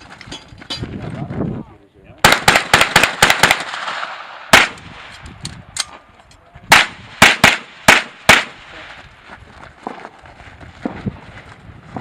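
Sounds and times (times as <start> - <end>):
pistol shots: 2.2 - 5.2, 6.7 - 8.8.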